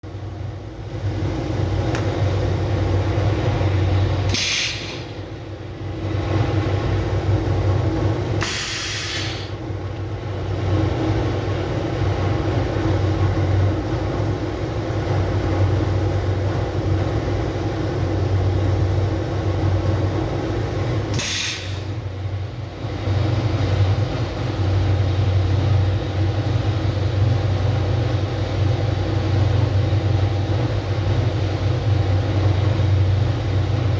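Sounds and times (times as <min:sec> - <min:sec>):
compressed air hisses: 0:04.3 - 0:05.2, 0:08.4 - 0:09.6, 0:21.2 - 0:21.9.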